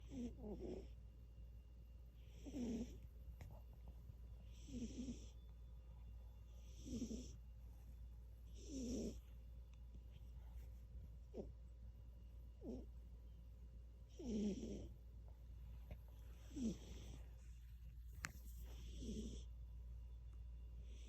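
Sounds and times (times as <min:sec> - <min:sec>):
pet snoring: 0:00.0 - 0:01.0, 0:02.2 - 0:03.1, 0:04.5 - 0:05.4, 0:06.6 - 0:07.4, 0:08.5 - 0:09.2, 0:12.6 - 0:12.9, 0:14.1 - 0:15.0, 0:16.4 - 0:17.2, 0:18.6 - 0:19.5.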